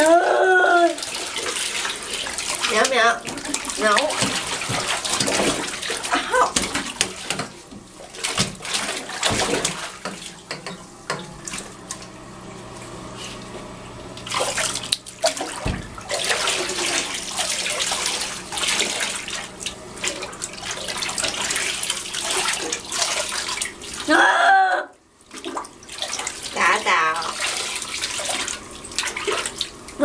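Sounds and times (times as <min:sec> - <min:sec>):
water splashing in a bath: 0:00.0 - 0:30.0.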